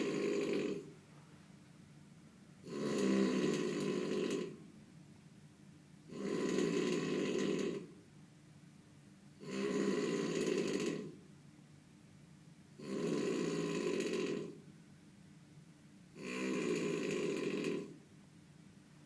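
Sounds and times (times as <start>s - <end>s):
loud rasping snoring: 0.0s - 0.9s, 2.6s - 4.6s, 6.1s - 8.0s, 9.4s - 11.2s, 12.8s - 14.6s, 16.2s - 18.0s.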